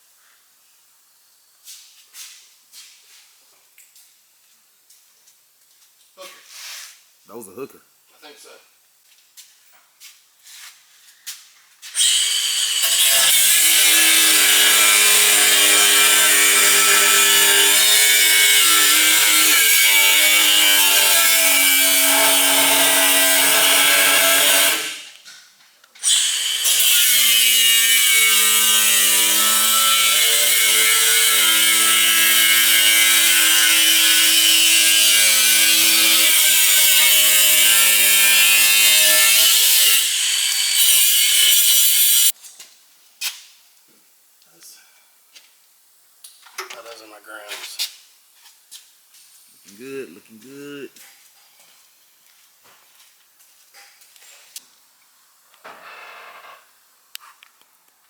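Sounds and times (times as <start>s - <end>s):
power saw cutting metal: 12.0s - 25.2s, 26.0s - 42.3s.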